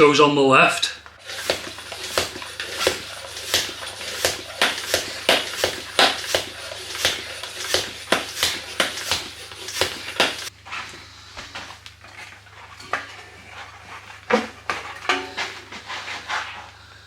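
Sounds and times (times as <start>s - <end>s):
bicycle pump hissing strokes: 1.1s - 10.5s.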